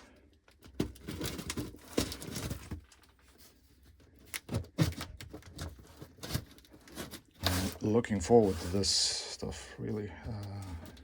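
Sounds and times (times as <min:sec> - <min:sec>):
cardboard tearing and rustling: 0:00.6 - 0:08.9.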